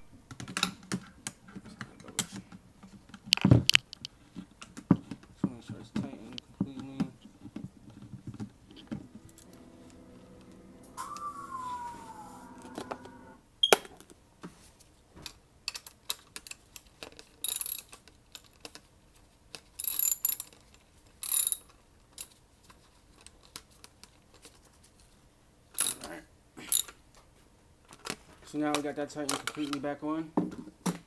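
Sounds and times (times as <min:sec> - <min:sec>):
socket wrench ratcheting: 0:25.8 - 0:26.0.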